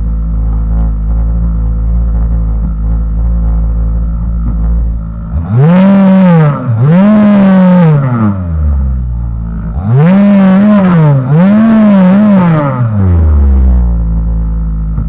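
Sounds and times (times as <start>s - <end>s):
chainsaw idling and revving: 5.3s - 8.6s, 9.6s - 13.8s.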